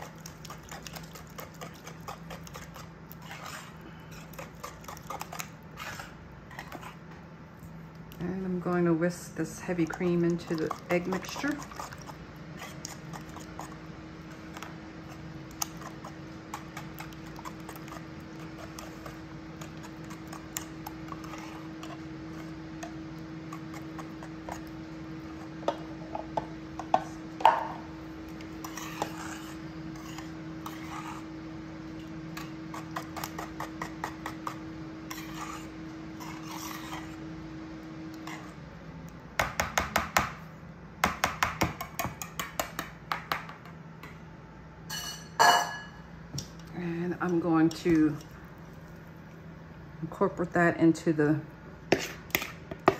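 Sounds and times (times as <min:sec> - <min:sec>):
metal clinks against bowl: 0:44.9 - 0:46.0.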